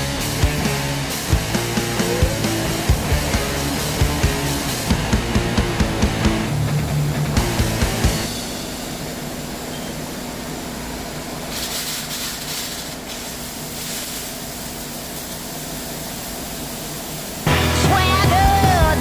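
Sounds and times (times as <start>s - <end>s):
music: 0.0s - 8.6s, 17.5s - 19.0s
machining center humming: 0.0s - 11.5s, 17.5s - 19.0s
machine hiss: 8.1s - 17.6s.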